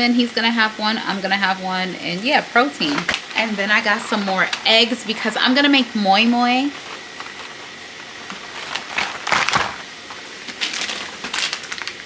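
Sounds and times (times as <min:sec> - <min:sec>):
packaging rustling and crinkling: 0:02.8 - 0:12.0.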